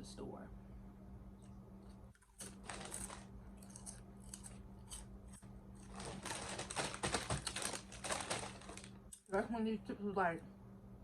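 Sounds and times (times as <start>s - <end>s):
chip bag crackling: 2.4s - 5.0s, 5.8s - 9.2s.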